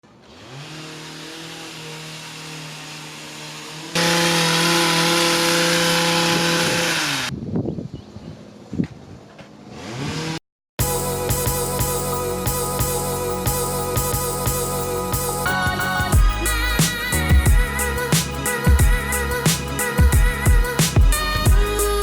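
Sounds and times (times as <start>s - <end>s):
small gas engine running: 0.1s - 7.3s.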